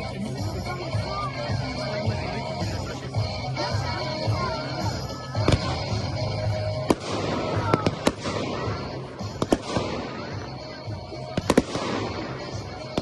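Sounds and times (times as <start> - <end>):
music playing: 0.0 - 13.0
fireworks bursting: 3.7 - 13.0.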